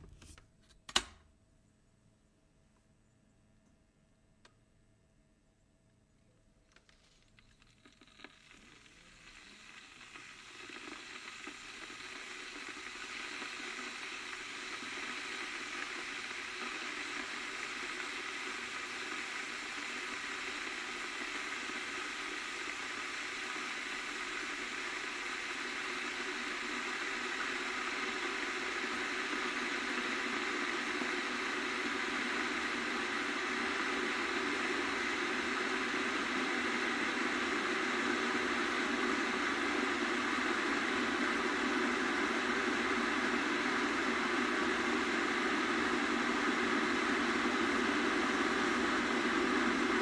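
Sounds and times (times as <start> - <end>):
electric kettle heating water: 6.6 - 50.0
faint kettle ticks: 6.7 - 38.5.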